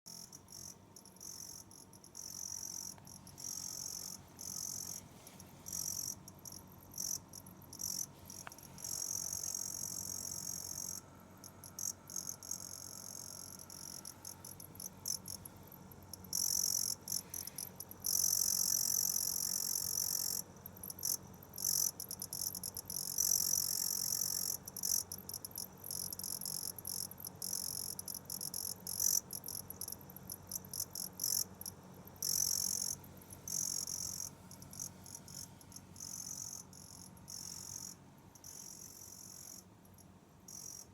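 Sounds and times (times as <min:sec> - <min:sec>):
high-pitched electrical chirping: 0:00.1 - 0:05.0, 0:05.7 - 0:15.4, 0:32.2 - 0:39.7
faint low hum: 0:00.1 - 0:40.9.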